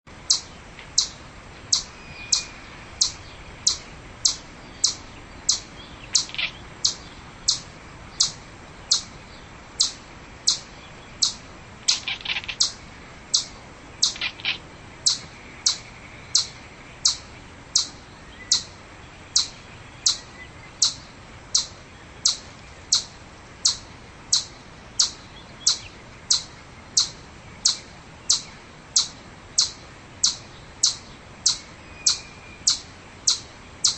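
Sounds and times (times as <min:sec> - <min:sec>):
chipmunk chip calls: 0:00.2 - 0:33.9.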